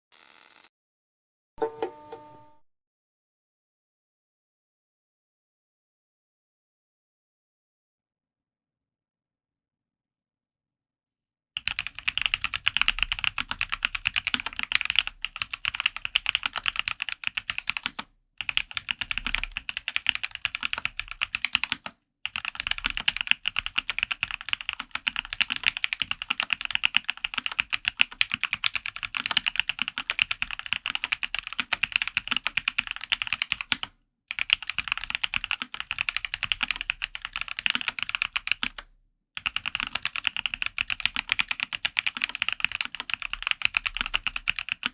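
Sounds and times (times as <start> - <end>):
fast typing on mechanical keyboard: 11.6 - 44.9.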